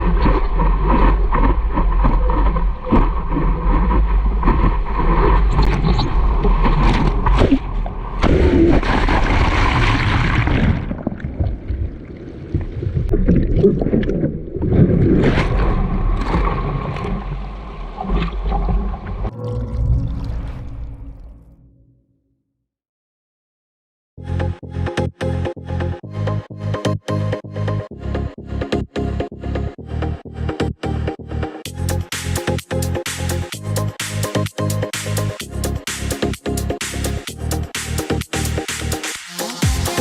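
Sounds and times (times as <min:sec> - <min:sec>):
water sloshing and splashing: 0:00.0 - 0:21.5.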